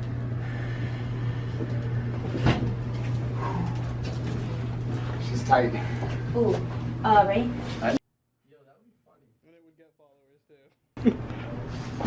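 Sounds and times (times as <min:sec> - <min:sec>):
steady low hum: 0:00.0 - 0:08.0, 0:10.4 - 0:12.0.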